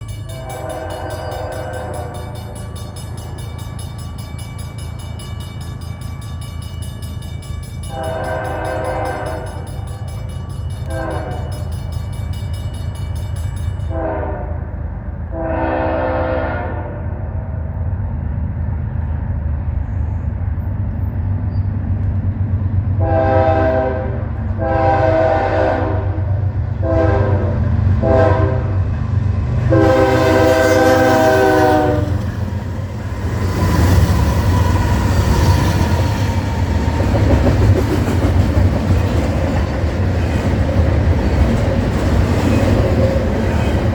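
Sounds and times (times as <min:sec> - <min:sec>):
train rumble: 0:00.0 - 0:43.9
locomotive air horn blasts: 0:00.3 - 0:02.3, 0:07.9 - 0:09.6, 0:10.8 - 0:11.6, 0:13.9 - 0:14.7, 0:15.3 - 0:17.1, 0:23.0 - 0:28.9, 0:29.7 - 0:32.3.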